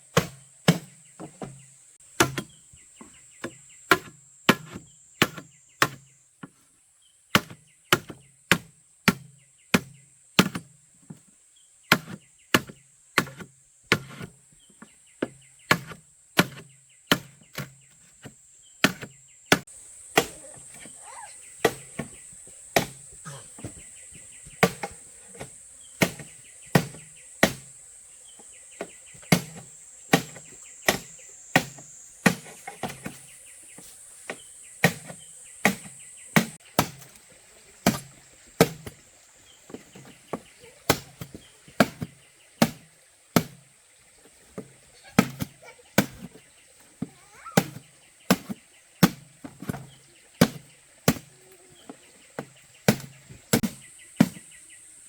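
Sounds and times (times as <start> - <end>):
bamboo being chopped: 0.1 - 6.6, 7.3 - 11.2, 11.9 - 27.8, 28.4 - 37.2, 37.8 - 39.0, 39.7 - 43.7, 44.6 - 54.7
insects shrilling: 19.6 - 37.2.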